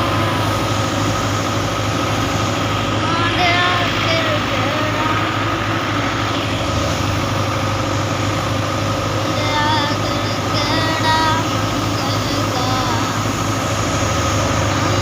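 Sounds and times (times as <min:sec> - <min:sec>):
farm engine running: 0:00.0 - 0:15.0
faint voices: 0:03.0 - 0:05.6, 0:09.2 - 0:13.4.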